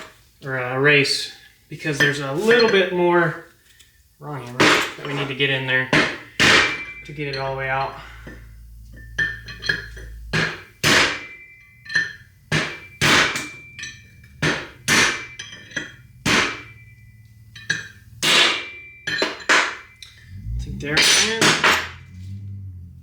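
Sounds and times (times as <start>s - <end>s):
hammer striking steel: 5.9s - 8.0s, 9.0s - 20.2s, 21.0s - 22.0s.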